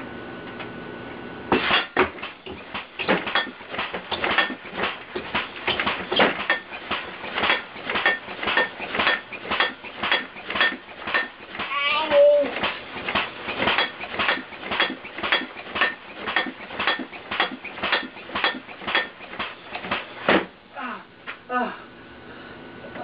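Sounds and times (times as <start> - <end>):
metal clanging and clattering: 1.5 - 11.7, 12.5 - 20.5.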